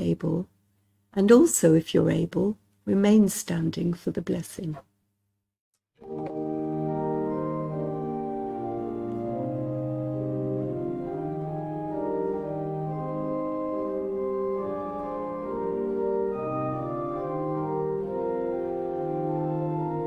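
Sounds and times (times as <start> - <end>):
organ playing hymn chords: 6.0 - 20.0.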